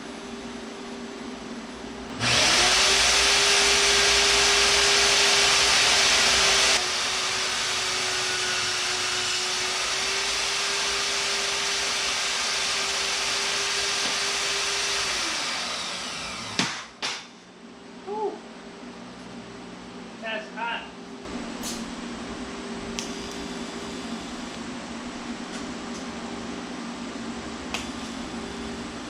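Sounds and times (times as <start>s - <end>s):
power tool motor whining: 2.1s - 17.2s.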